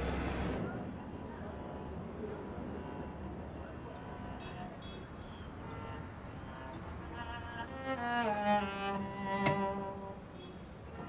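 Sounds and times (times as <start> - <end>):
slow bowed string music: 7.2 - 10.3.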